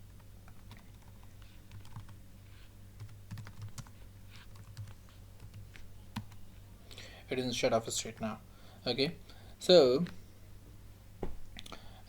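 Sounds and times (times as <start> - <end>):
low steady hum: 0.0 - 12.0
computer keyboard typing: 0.5 - 2.2, 3.0 - 6.4.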